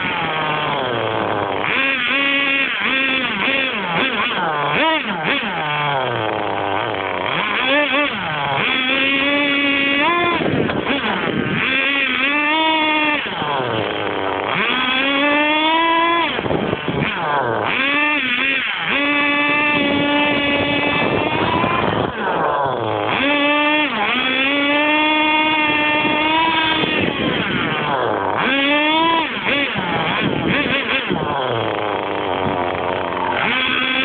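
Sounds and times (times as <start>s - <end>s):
rc car engine revving: 0.0s - 34.0s.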